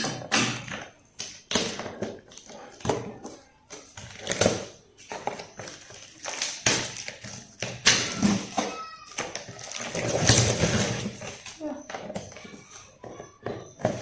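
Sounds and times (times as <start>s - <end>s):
packaging rustle: 4.0s - 12.8s.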